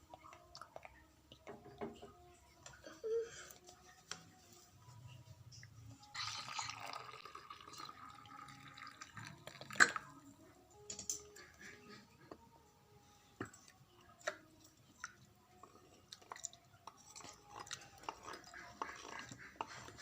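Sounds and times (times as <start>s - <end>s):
liquid being poured: 6.1s - 10.2s.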